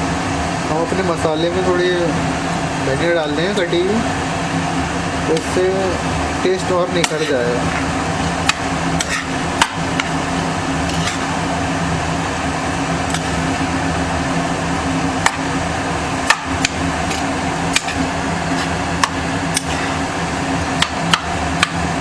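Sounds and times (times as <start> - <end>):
fan humming: 0.0 - 22.0
metal spoon scraping a utensil: 9.0 - 9.3.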